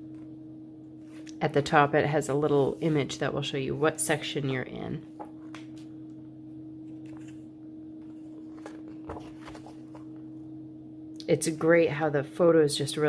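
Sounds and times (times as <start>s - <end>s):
low electrical hum: 0.0s - 13.0s
book pages turning: 6.8s - 10.3s.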